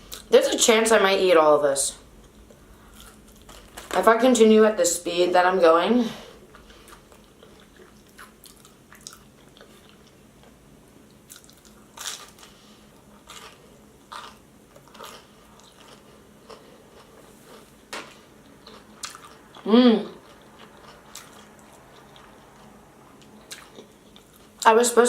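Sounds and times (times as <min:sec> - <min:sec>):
person chewing crunchy food: 0:02.2 - 0:03.9, 0:06.5 - 0:10.5, 0:11.1 - 0:24.6.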